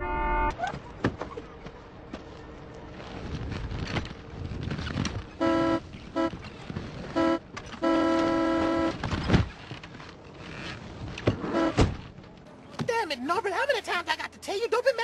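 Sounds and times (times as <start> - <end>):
car horn honking: 0.0 - 0.6, 5.4 - 6.4, 7.1 - 9.0.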